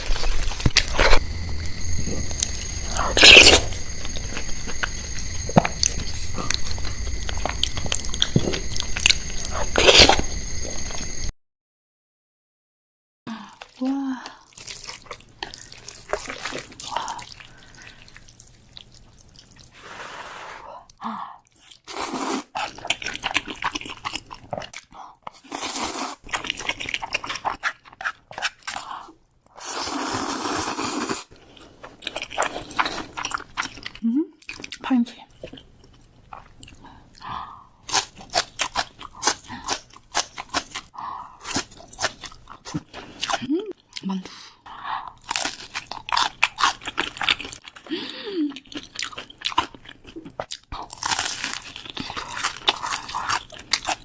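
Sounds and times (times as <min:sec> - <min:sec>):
crunchy chewing: 0:00.0 - 0:11.3, 0:14.5 - 0:19.7, 0:21.5 - 0:29.2, 0:30.0 - 0:34.8, 0:35.4 - 0:44.1, 0:45.0 - 0:47.9, 0:48.5 - 0:54.0
loud bite crunch: 0:02.0 - 0:10.4, 0:37.8 - 0:44.0, 0:45.2 - 0:47.9, 0:48.7 - 0:54.0
chewing with wet mouth clicks: 0:22.6 - 0:25.4, 0:31.4 - 0:44.1, 0:45.2 - 0:47.9, 0:48.5 - 0:54.0.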